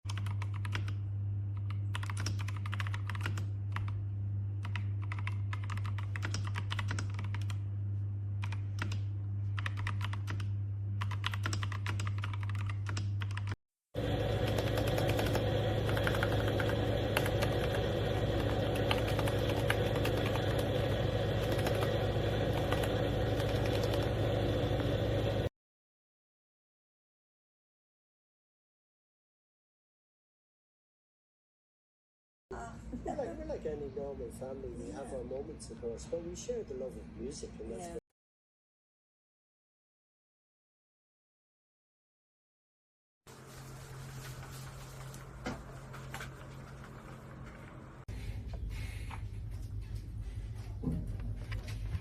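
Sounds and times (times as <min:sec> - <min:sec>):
mechanical keyboard keystroke clacks: 0:04.6 - 0:07.6, 0:22.7 - 0:24.0
steady low hum: 0:14.0 - 0:25.5, 0:43.5 - 0:52.0.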